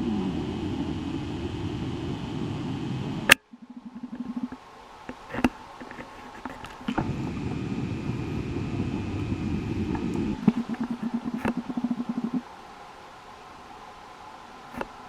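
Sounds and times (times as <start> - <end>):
ceiling fan motor hum: 0.0 - 15.0.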